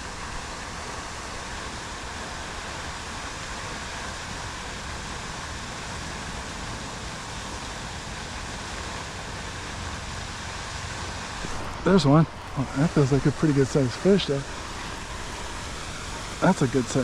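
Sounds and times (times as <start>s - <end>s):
wind blowing across microphone: 0.0s - 17.0s.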